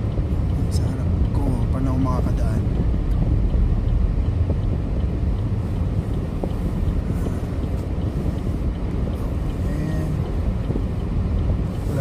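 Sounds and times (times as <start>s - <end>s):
wind noise: 0.0s - 9.6s
car engine rumble from inside: 0.0s - 12.0s.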